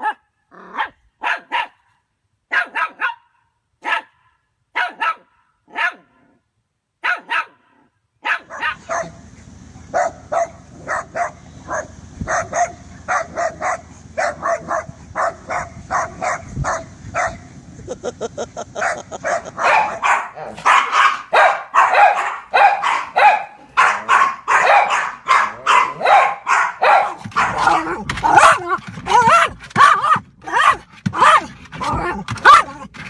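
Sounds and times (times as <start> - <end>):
dog barking: 0.0 - 1.9, 2.5 - 6.4, 7.0 - 9.2, 9.9 - 17.4, 18.8 - 32.8.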